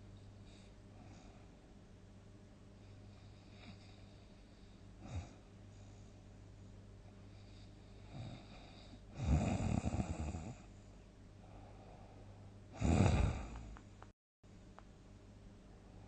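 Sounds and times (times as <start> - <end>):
person snoring: 8.0 - 10.7, 12.7 - 13.8.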